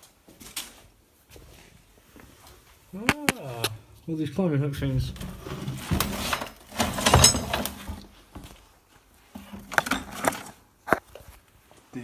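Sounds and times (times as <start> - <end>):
hard objects clattering: 5.0 - 8.0, 9.4 - 11.3.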